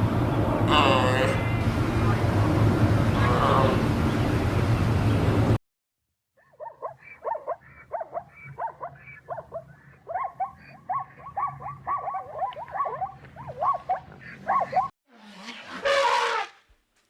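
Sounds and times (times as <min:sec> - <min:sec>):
animal yelping: 0:06.4 - 0:14.9.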